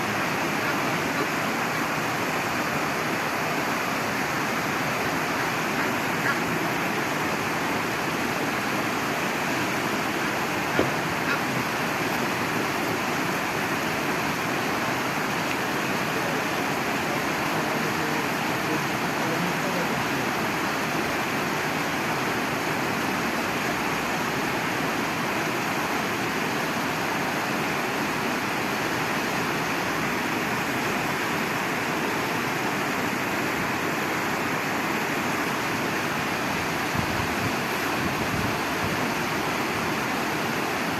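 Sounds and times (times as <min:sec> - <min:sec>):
rushing water: 0:00.0 - 0:40.9.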